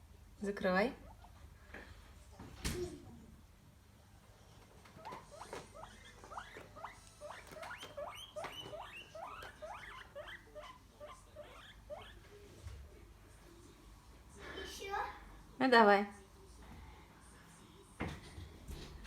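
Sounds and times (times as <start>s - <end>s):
guinea pig squealing: 0.9s - 1.4s, 4.8s - 12.4s.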